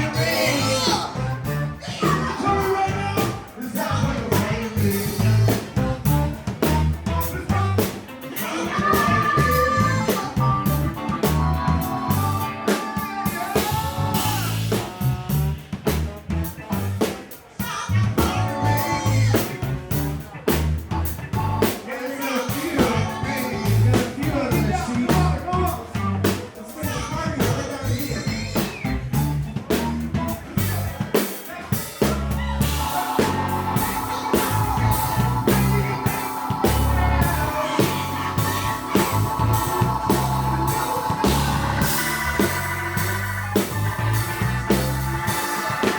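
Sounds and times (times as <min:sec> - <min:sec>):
funk band playing: 0:00.0 - 0:45.9
horns holding long notes: 0:08.8 - 0:15.4, 0:32.6 - 0:45.9.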